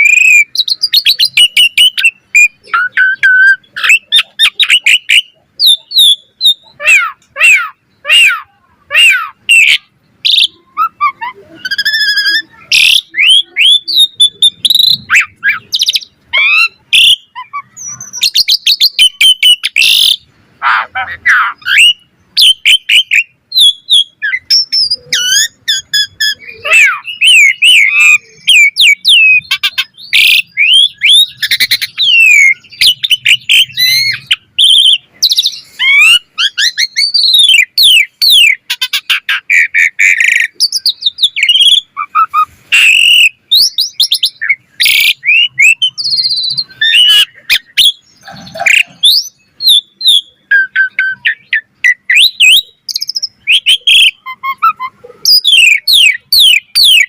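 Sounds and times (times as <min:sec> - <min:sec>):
starling singing: 0:00.0 - 0:57.0.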